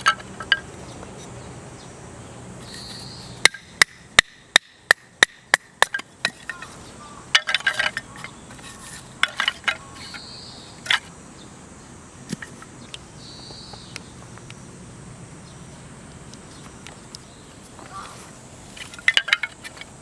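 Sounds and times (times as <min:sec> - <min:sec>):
high insect buzz: 0:00.0 - 0:05.5, 0:06.1 - 0:20.0.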